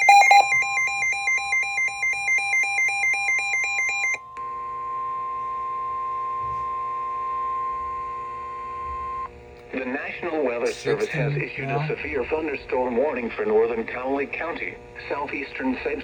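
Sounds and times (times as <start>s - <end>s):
two-pitch electronic warble: 0.0s - 1.0s
steady attention tone: 0.0s - 4.2s.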